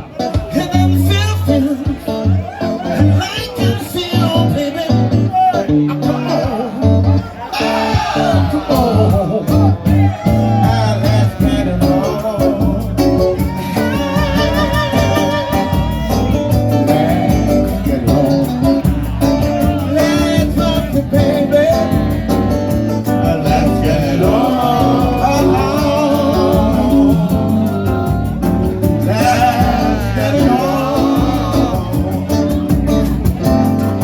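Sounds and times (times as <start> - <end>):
guitar accompaniment: 0.0 - 34.0
person singing: 0.0 - 34.0.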